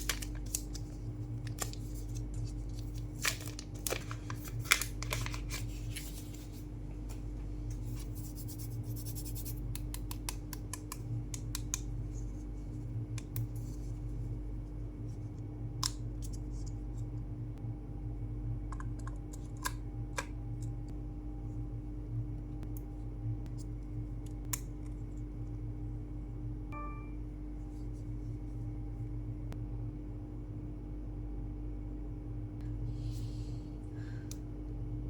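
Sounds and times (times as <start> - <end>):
packaging rustling: 0.0 - 6.6
steady low hum: 0.0 - 35.0.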